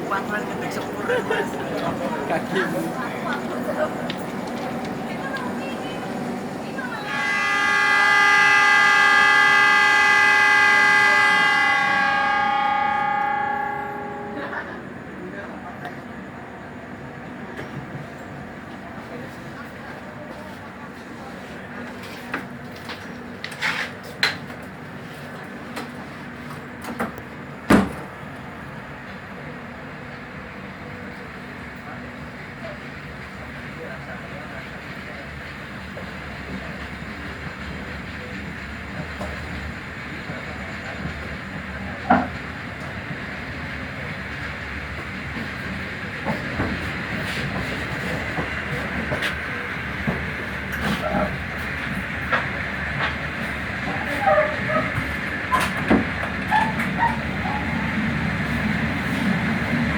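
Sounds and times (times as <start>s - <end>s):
rail clicks: 0.0s - 16.2s, 34.6s - 59.9s
train running hum: 0.0s - 59.9s.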